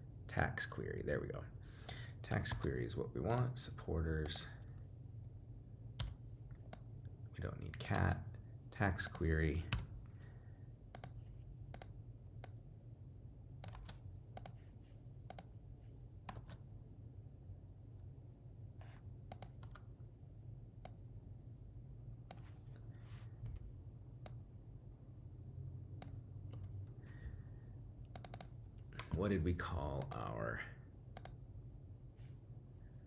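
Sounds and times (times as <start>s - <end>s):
faint low hum: 0.0s - 33.0s
computer keyboard keystrokes: 1.8s - 3.6s, 6.0s - 6.9s, 7.8s - 8.2s, 9.0s - 10.1s, 10.9s - 12.6s, 13.6s - 14.6s, 15.3s - 15.6s, 16.2s - 16.6s, 18.8s - 20.0s, 23.4s - 24.4s, 26.0s - 26.8s, 28.1s - 29.2s, 30.0s - 30.3s, 31.2s - 31.4s.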